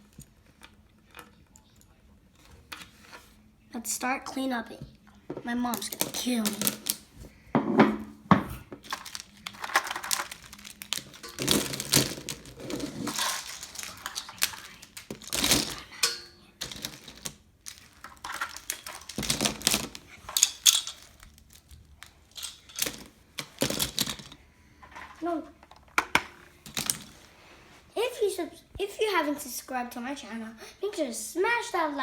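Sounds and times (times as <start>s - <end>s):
plastic toys clattering: 5.4s - 7.3s, 8.3s - 27.3s
rustling: 8.5s - 25.3s.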